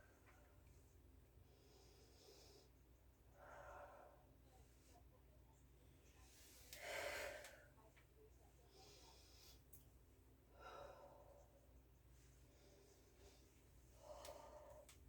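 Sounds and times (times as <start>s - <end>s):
low steady hum: 0.0s - 15.0s
person breathing heavily: 12.5s - 15.0s.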